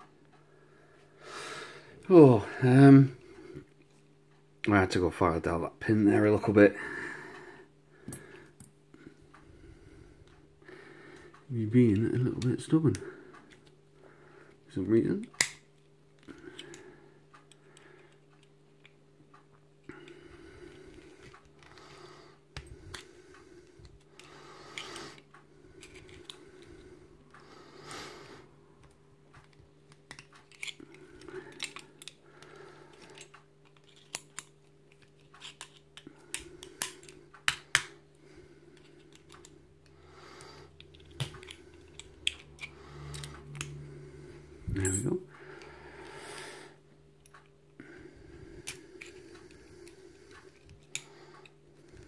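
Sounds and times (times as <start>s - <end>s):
screwdriver clicking and scraping metal: 30.1s - 32.2s, 32.9s - 37.8s.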